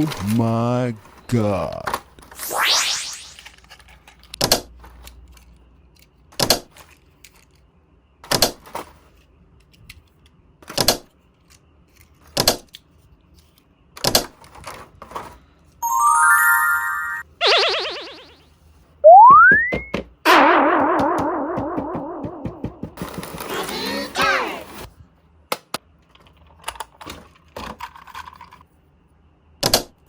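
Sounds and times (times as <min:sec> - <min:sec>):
plastic toy pieces clacking: 0:03.4 - 0:07.6, 0:26.1 - 0:28.6
beeping electronic sound effect: 0:15.8 - 0:18.4, 0:19.1 - 0:19.9.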